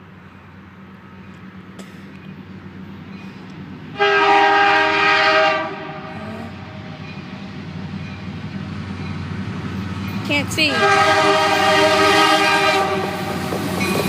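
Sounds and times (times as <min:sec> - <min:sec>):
train rumble: 0:00.0 - 0:14.0
locomotive air horn: 0:03.9 - 0:06.7, 0:10.7 - 0:13.5.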